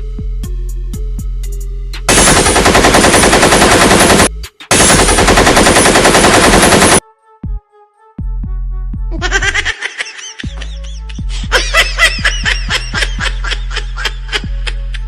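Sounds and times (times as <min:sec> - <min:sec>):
music: 0:00.0 - 0:15.0
machine-gun fire: 0:02.1 - 0:07.0.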